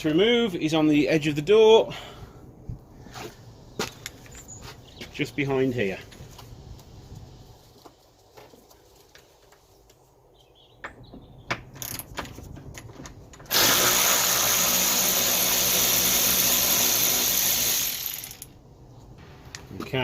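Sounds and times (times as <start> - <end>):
power drill running: 13.5 - 18.5.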